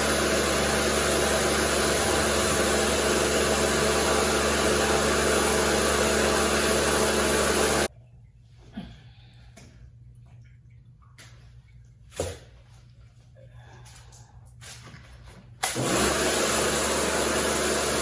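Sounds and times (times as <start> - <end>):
pressure washer running: 0.0 - 7.9, 15.6 - 18.0.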